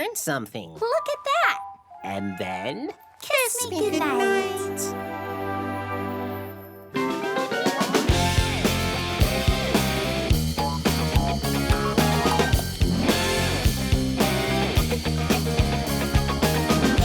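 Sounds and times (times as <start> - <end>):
upbeat rock music: 7.0 - 17.0.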